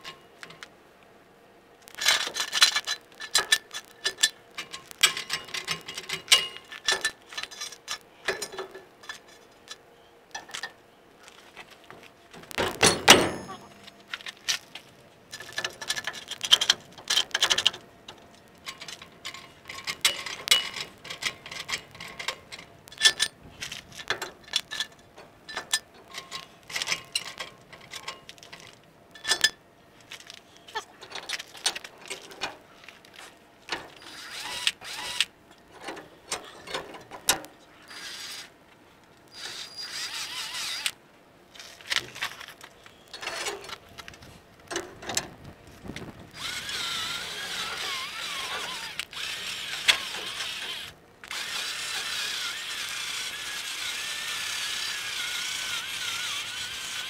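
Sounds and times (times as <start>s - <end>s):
metallic tool clicks and clanks: 18.6s - 23.4s.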